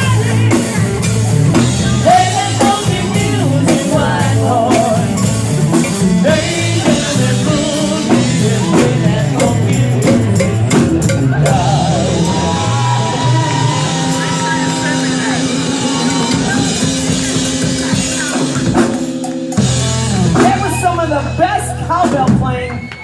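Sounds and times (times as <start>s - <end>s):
drum kit: 0.0s - 23.0s
rock song: 0.0s - 23.0s
person singing: 1.7s - 18.4s.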